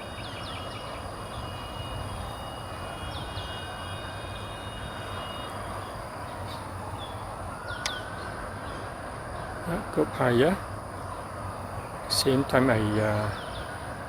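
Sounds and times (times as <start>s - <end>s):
bird chirps: 0.0s - 9.6s, 12.7s - 13.9s
distant traffic hum: 0.0s - 14.0s
high insect whine: 0.0s - 14.0s.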